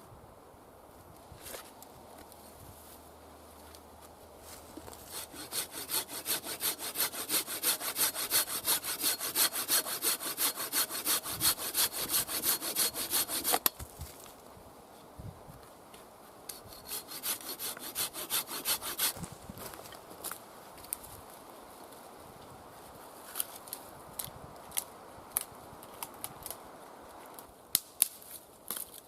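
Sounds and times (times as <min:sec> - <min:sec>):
saw cutting wood: 0:05.0 - 0:13.7, 0:16.5 - 0:19.2.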